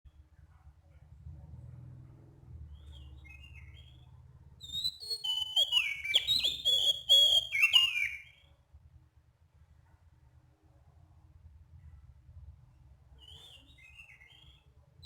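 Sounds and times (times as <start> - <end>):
bird singing whistles: 2.7 - 8.5, 13.2 - 14.7.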